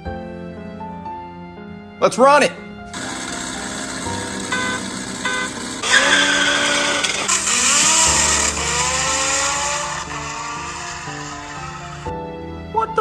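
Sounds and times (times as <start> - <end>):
car engine accelerating hard: 2.9 - 12.1.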